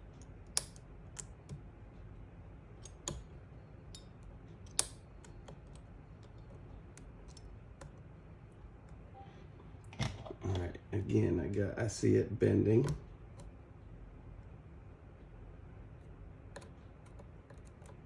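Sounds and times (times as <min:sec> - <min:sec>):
metal tools clicking and tapping: 0:03.9 - 0:05.6.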